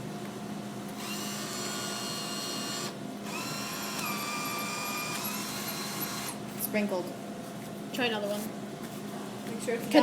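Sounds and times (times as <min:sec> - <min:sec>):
bill acceptor motor whirring: 0:01.0 - 0:06.4.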